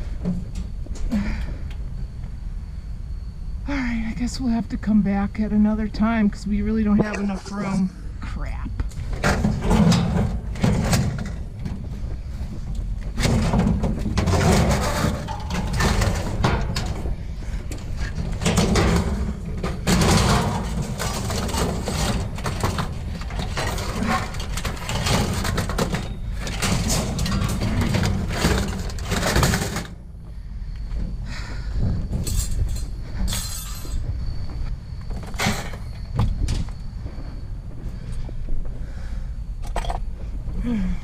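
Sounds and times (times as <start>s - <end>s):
steady low rumble: 0.0s - 14.6s, 29.8s - 41.0s
scrap clattering and rustling: 9.0s - 30.4s, 31.0s - 38.3s.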